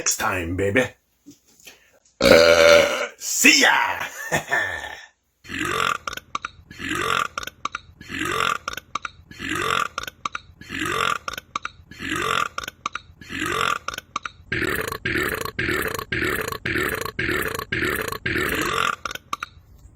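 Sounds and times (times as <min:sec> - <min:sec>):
belches with rising pitch: 0:05.5 - 0:19.3.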